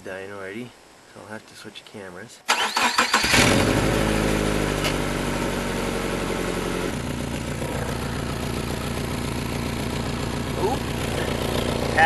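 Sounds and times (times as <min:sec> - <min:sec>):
car engine idling: 0:03.5 - 0:12.0.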